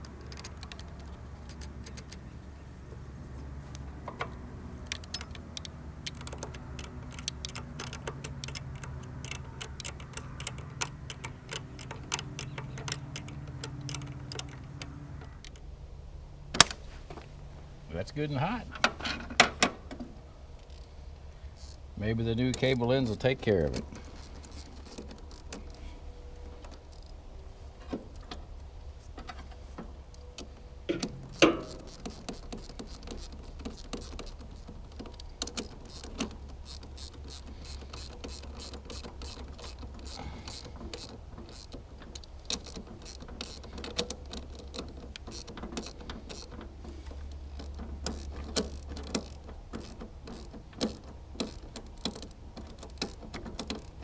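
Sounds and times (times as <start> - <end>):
small metallic ratchet clicks: 0.0 - 15.6.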